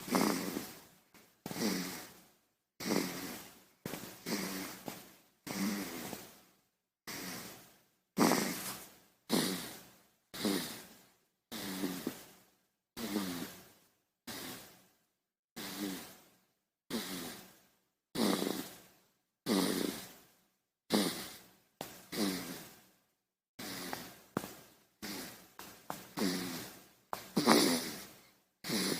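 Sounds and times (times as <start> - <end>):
baby snoring: 0.0 - 0.9, 1.5 - 2.2, 2.8 - 6.4, 7.1 - 12.3, 13.0 - 13.7, 14.3 - 14.8, 15.6 - 16.2, 16.9 - 17.6, 18.2 - 20.2, 20.9 - 21.5, 22.1 - 22.8, 23.6 - 24.2, 25.0 - 28.9.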